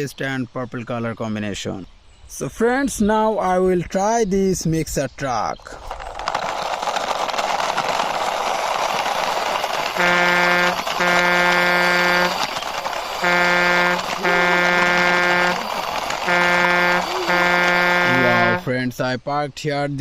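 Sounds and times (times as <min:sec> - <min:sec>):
truck horn honking: 0:09.9 - 0:18.7.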